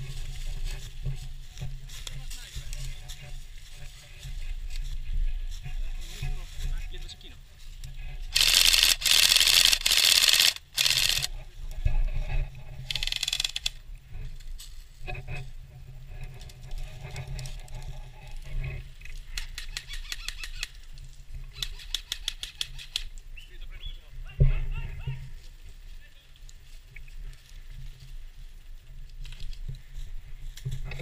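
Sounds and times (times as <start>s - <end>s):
airsoft guns firing in bursts: 8.4s - 11.3s.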